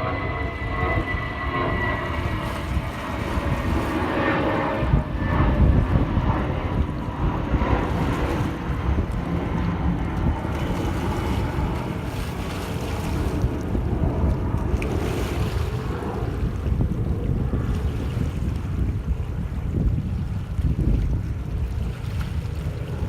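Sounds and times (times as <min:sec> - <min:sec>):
aircraft engine drone: 0:00.0 - 0:23.0
wind buffeting microphone: 0:00.0 - 0:23.0
small waves lapping on shore: 0:06.9 - 0:23.0.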